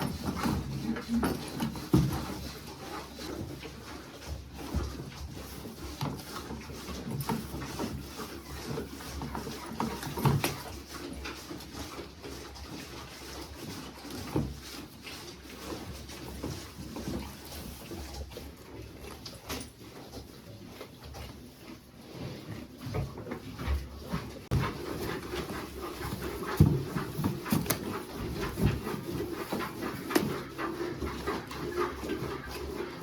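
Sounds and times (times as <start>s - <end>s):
rustling: 4.6s - 33.0s.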